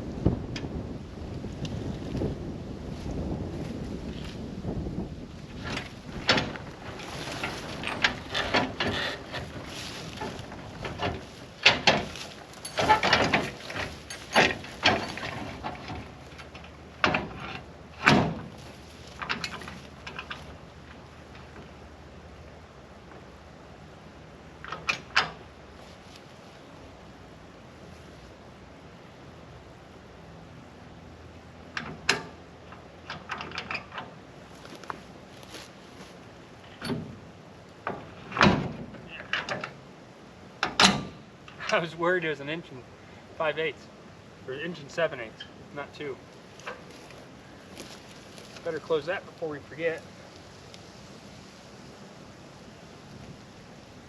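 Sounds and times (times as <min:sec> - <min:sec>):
metal rattles: 0:05.4 - 0:21.8, 0:31.7 - 0:36.1
metal clanks of trailer hitch: 0:05.6 - 0:21.7, 0:24.6 - 0:25.5, 0:31.7 - 0:34.2, 0:36.7 - 0:37.2, 0:37.8 - 0:39.8, 0:40.6 - 0:42.0.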